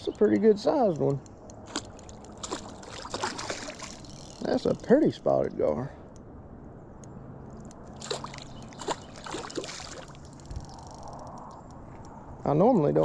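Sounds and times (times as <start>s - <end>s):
fish splashing in water: 1.7s - 4.5s, 8.0s - 10.5s.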